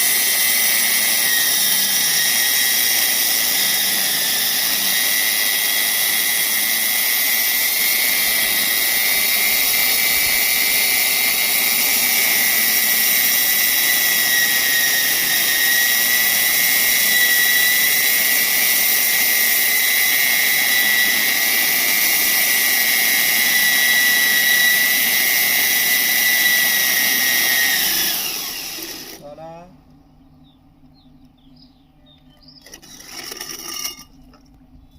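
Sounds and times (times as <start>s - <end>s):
electric drill motor whining: 0.0s - 29.3s, 32.6s - 34.1s.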